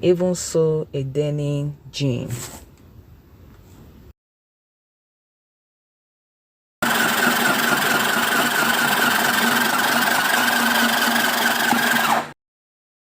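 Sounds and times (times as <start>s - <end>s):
sewing machine motor humming: 6.8s - 12.4s.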